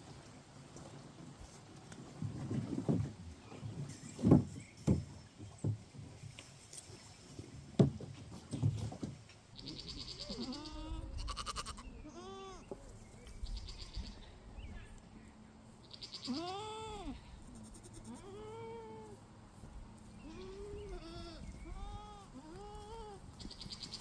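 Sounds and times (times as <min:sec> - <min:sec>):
goats bleating: 0:09.6 - 0:12.7, 0:15.9 - 0:19.2, 0:20.2 - 0:24.0.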